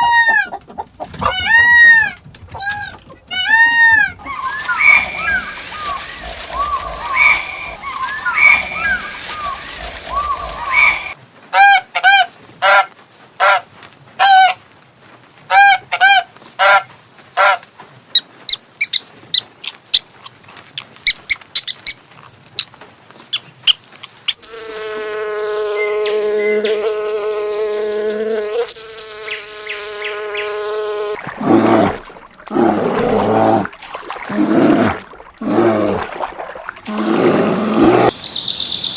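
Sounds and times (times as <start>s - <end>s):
low animal calls: 1.2s - 11.2s, 31.0s - 38.2s
short pitched animal calls: 2.6s - 11.2s
animal chirps and clicks: 4.2s - 11.2s
steady animal buzz: 4.3s - 11.2s, 24.4s - 36.2s.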